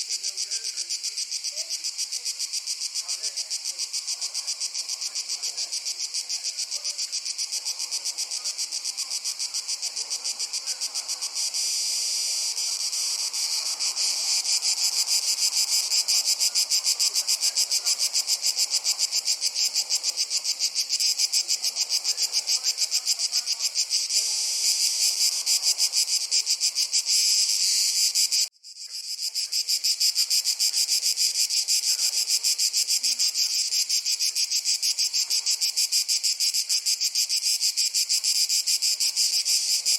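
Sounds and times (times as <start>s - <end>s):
crickets chirping: 0.0s - 39.9s.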